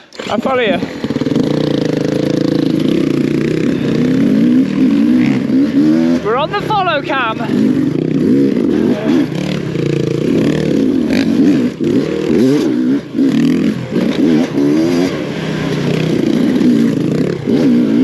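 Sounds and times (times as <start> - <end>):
dirt bike engine revving: 0.0 - 18.0.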